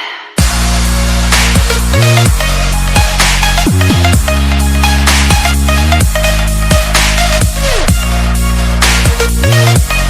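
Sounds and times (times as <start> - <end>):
electronic dance music: 0.0 - 10.0.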